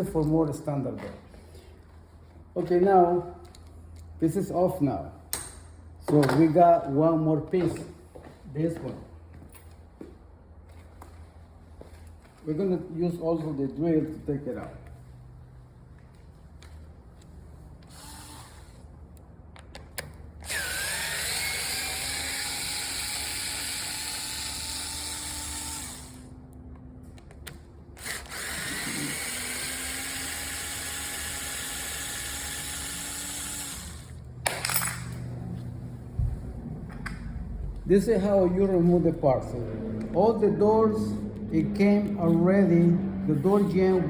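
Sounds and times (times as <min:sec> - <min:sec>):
cordless drill whining: 0:17.8 - 0:18.9, 0:20.4 - 0:26.3, 0:28.0 - 0:34.2.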